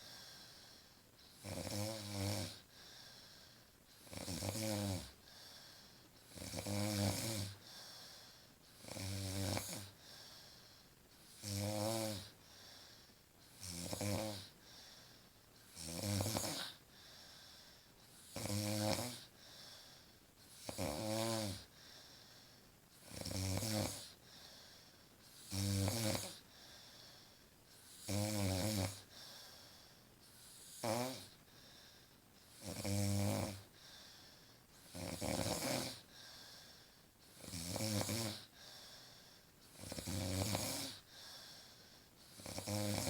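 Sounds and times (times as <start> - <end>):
faint breath: 0.0 - 1.4, 2.7 - 4.0, 5.2 - 6.3, 7.6 - 8.8, 10.0 - 11.3, 12.4 - 13.6, 14.5 - 15.7, 16.8 - 18.2, 19.3 - 20.5, 21.7 - 22.8, 24.1 - 25.4, 26.4 - 28.0, 29.0 - 30.7, 31.3 - 32.5, 33.6 - 34.9, 36.0 - 37.3, 38.4 - 39.7, 40.9 - 42.3
woman snoring: 1.3 - 2.7, 4.0 - 5.2, 6.3 - 7.6, 8.8 - 10.0, 11.3 - 12.4, 13.5 - 14.6, 15.7 - 16.8, 18.2 - 19.3, 20.6 - 21.7, 23.0 - 24.2, 25.4 - 26.4, 27.9 - 29.1, 30.5 - 31.4, 32.5 - 33.7, 34.9 - 36.1, 37.3 - 38.5, 39.8 - 41.1, 42.3 - 43.0.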